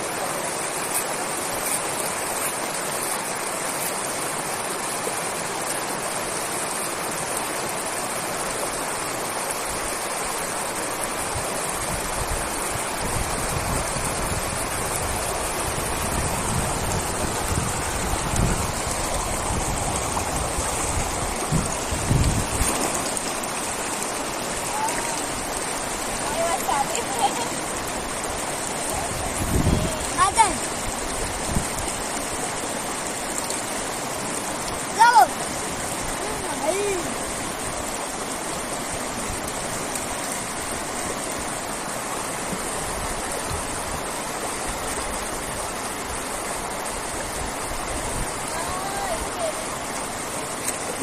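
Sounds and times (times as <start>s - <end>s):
flowing river water: 0.0s - 51.0s
low rumbling gusts: 11.2s - 32.0s.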